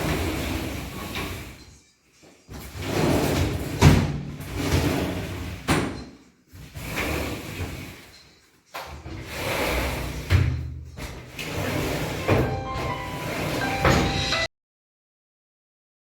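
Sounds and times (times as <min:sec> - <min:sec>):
sliding panel rolling along track: 0:00.0 - 0:01.7, 0:02.6 - 0:05.8, 0:06.6 - 0:08.3, 0:09.0 - 0:14.5.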